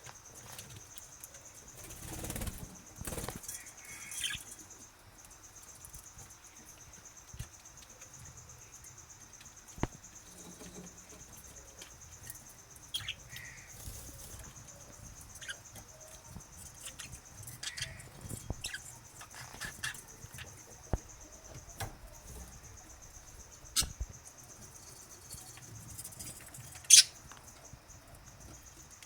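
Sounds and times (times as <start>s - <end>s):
birds fluttering wings: 1.7s - 4.4s.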